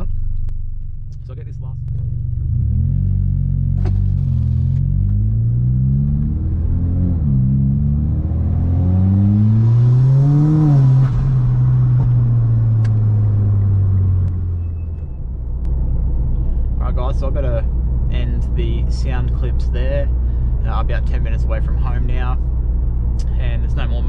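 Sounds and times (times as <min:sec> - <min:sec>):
car engine accelerating: 0:00.0 - 0:24.0.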